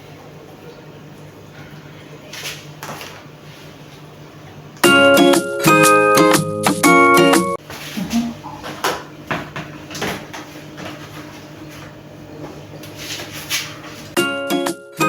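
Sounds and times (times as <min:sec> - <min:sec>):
plucked-string background music: 0:04.8 - 0:07.6.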